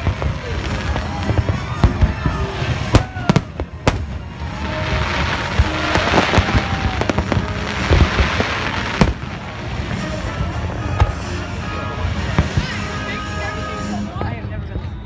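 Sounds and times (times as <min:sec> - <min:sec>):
fireworks crackling: 0:00.0 - 0:13.8
fireworks sharp bangs: 0:02.9 - 0:04.3, 0:07.1 - 0:09.5.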